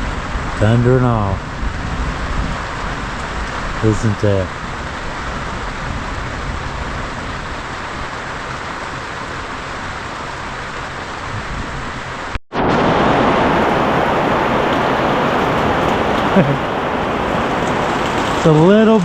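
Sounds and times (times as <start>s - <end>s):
heavy rain on a tent: 0.0s - 19.0s.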